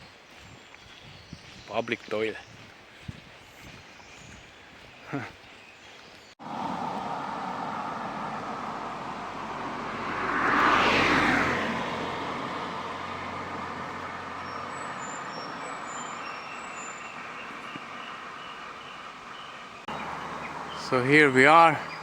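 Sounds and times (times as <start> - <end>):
road vehicle passing by: 6.4 - 22.0.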